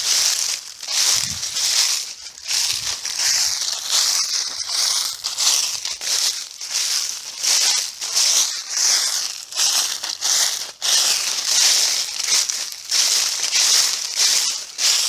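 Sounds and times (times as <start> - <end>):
footsteps crunching through dry leaves: 0.0 - 15.0.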